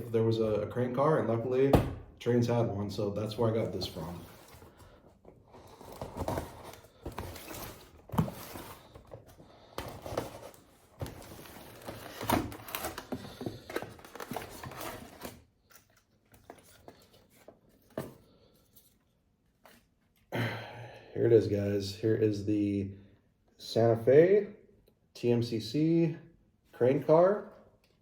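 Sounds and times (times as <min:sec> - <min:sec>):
cardboard packaging rustling and tearing: 0:03.3 - 0:17.9.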